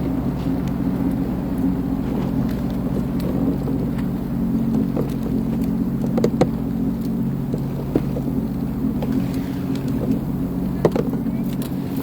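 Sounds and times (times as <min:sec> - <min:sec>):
watercraft engine running: 0:00.0 - 0:12.0.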